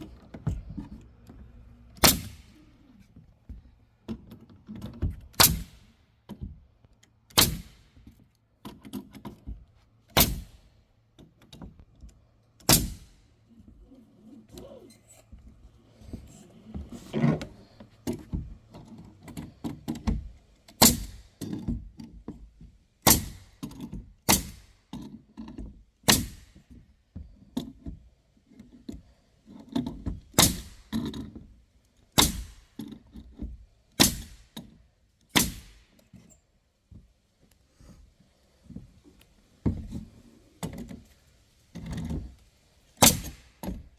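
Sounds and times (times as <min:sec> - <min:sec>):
air nailer bangs: 0:02.0 - 0:02.6, 0:05.4 - 0:06.0, 0:07.3 - 0:08.0, 0:10.2 - 0:10.6, 0:12.6 - 0:13.2, 0:20.8 - 0:21.3, 0:23.0 - 0:23.6, 0:24.3 - 0:24.7, 0:26.1 - 0:26.6, 0:30.4 - 0:30.9, 0:32.2 - 0:32.7, 0:34.0 - 0:34.6, 0:35.3 - 0:35.9, 0:43.0 - 0:43.9.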